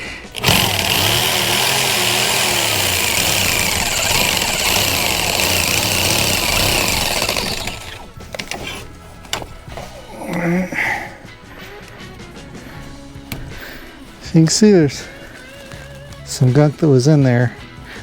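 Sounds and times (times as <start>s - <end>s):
power saw cutting plastic pipe: 0.0s - 9.5s.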